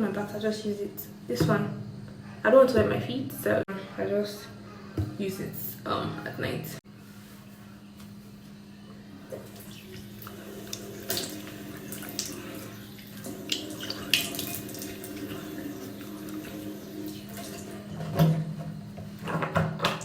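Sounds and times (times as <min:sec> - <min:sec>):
tap water running into sink: 0:09.3 - 0:18.4
water splashing on face: 0:09.5 - 0:17.6.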